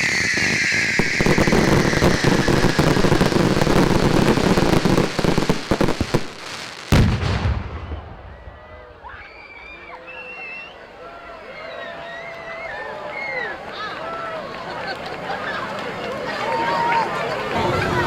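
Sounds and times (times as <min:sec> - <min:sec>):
firework whistle: 0:00.0 - 0:06.2
loud firework bang: 0:00.0 - 0:06.3, 0:06.9 - 0:08.8
firework crackle: 0:00.0 - 0:08.3.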